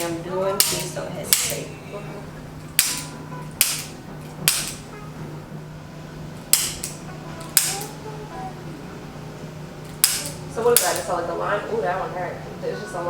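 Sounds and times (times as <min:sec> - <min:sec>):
adjusting instrument clicks: 0:00.0 - 0:01.7, 0:02.6 - 0:04.9, 0:06.4 - 0:08.0, 0:09.8 - 0:11.2.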